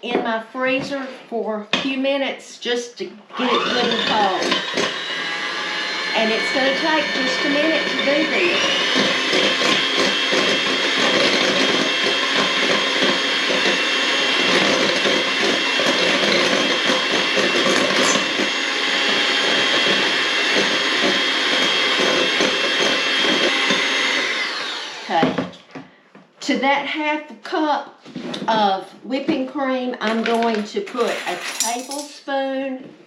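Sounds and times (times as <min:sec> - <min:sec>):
electric mixer whining: 0:03.3 - 0:25.5.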